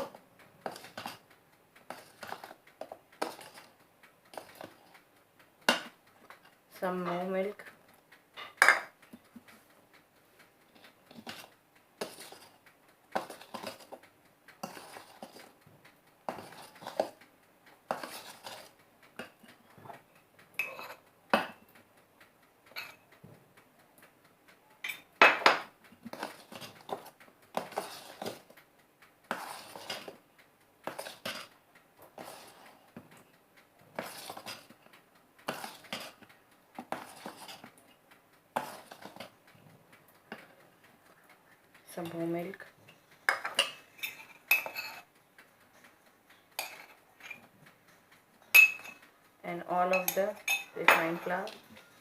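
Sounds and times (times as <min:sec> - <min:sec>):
spatula scraping a mixing bowl: 0:00.0 - 0:01.2, 0:01.9 - 0:02.6, 0:03.2 - 0:03.7, 0:11.1 - 0:12.5, 0:13.2 - 0:14.0, 0:14.6 - 0:15.5, 0:16.3 - 0:17.2, 0:17.9 - 0:19.3, 0:26.1 - 0:28.4, 0:29.3 - 0:30.2, 0:30.8 - 0:31.5, 0:32.2 - 0:32.8, 0:34.0 - 0:34.7, 0:35.5 - 0:36.2, 0:36.8 - 0:37.7, 0:38.6 - 0:39.3.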